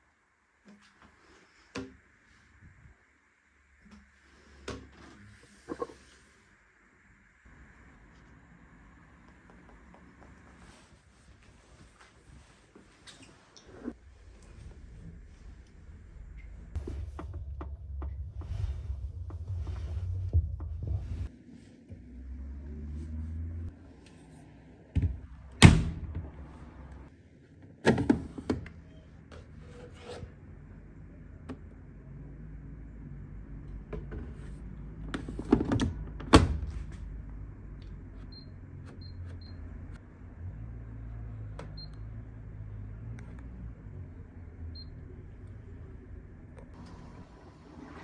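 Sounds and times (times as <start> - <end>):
low steady hum: 0.0 - 27.3.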